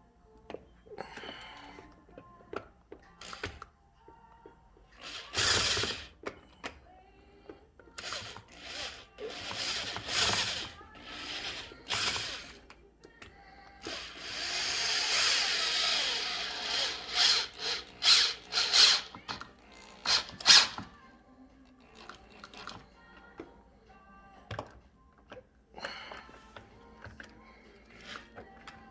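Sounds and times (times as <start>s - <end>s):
power drill driving screws: 5.0s - 6.1s, 8.0s - 12.6s, 13.8s - 21.0s.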